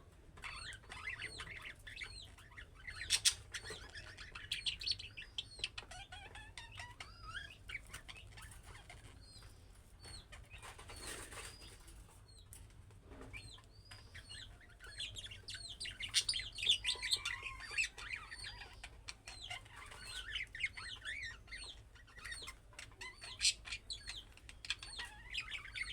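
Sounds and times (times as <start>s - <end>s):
budgerigars chirping: 0.4s - 12.4s, 13.3s - 25.9s.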